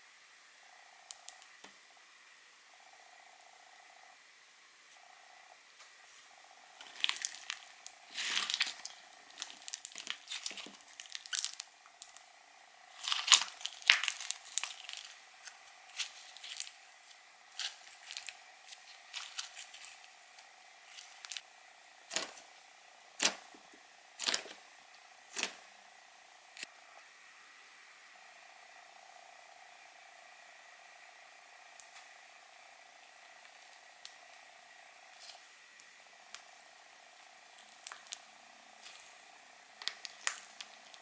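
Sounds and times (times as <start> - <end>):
slime crackling and squishing: 6.5 - 12.3, 12.9 - 21.5, 37.5 - 41.0
slime popping: 6.8 - 12.2, 13.0 - 16.8, 39.8 - 41.0.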